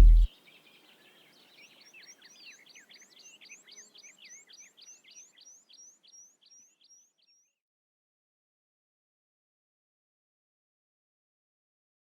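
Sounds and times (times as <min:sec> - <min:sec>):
songbird chirping: 0:00.0 - 0:07.1.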